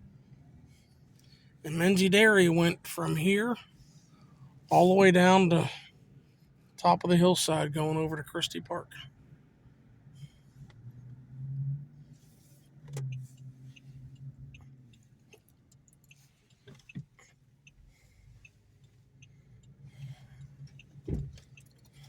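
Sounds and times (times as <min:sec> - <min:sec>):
car engine low hum: 0:00.0 - 0:22.0.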